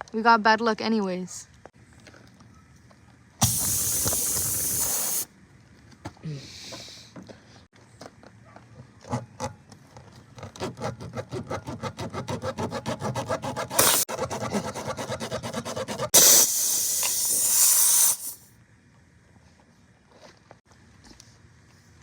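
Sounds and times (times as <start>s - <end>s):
air hissing from tyre: 3.4s - 5.3s, 13.8s - 14.1s, 16.1s - 18.5s
metal tool rasping in tyre: 10.6s - 18.4s.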